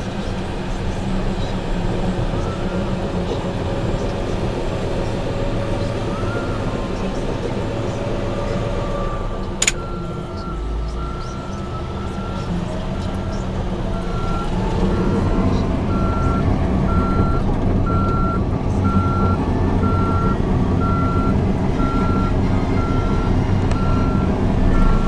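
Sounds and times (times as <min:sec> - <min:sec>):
bulldozer diesel engine running: 0:00.0 - 0:25.0
reverse alarm beeping: 0:09.0 - 0:15.2, 0:15.9 - 0:25.0.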